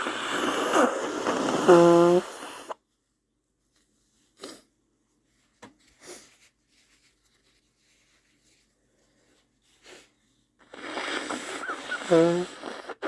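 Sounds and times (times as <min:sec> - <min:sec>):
person sniffling: 0:00.0 - 0:02.8, 0:06.0 - 0:06.4, 0:09.8 - 0:13.0.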